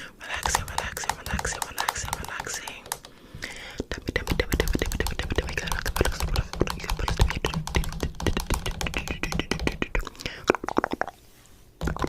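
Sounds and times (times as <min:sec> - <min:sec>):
rapid clicking and tapping: 0:00.3 - 0:03.1, 0:04.0 - 0:10.1.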